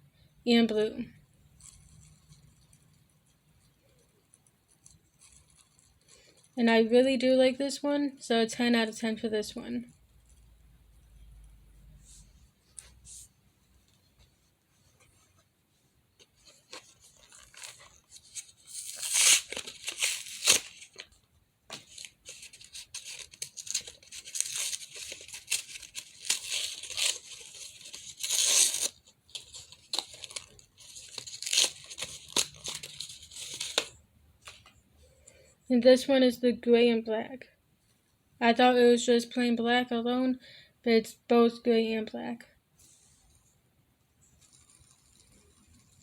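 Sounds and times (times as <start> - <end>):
plastic packaging tearing and crinkling: 16.7 - 21.1, 21.7 - 34.6.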